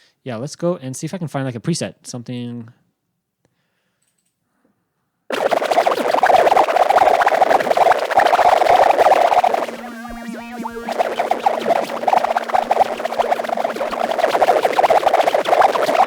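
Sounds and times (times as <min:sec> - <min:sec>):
crackling scratchy noise texture: 0:05.3 - 0:16.0.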